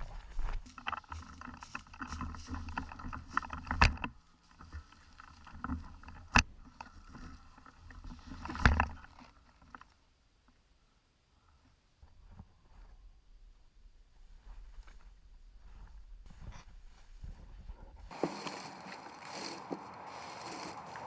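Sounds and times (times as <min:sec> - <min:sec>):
rustling movement: 0:00.0 - 0:10.0, 0:15.8 - 0:21.0.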